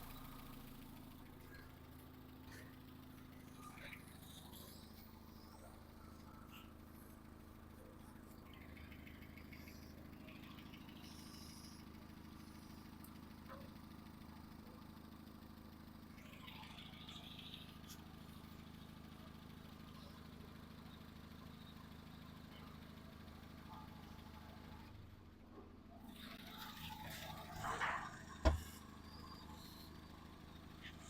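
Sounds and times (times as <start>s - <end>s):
faint car engine idling: 0.0s - 31.0s.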